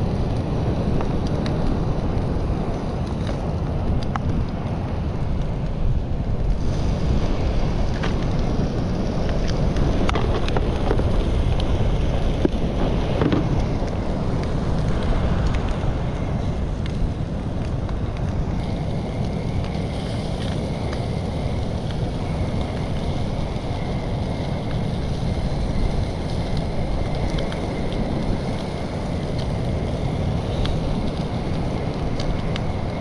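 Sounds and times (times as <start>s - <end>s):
wind buffeting microphone: 0.0s - 33.0s.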